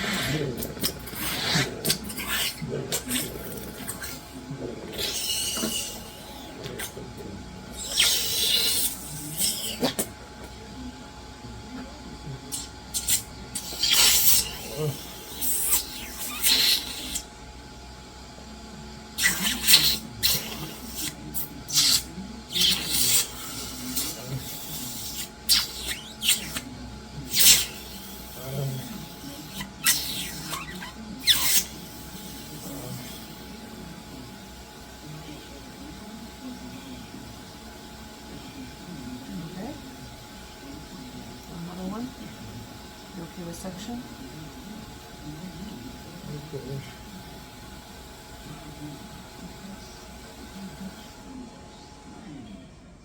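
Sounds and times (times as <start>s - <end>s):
low vocal sounds: 0.0s - 10.3s.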